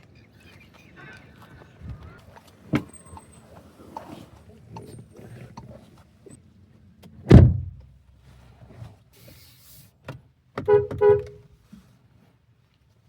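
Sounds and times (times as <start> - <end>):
car door shutting: 7.3 - 7.9, 10.1 - 11.4.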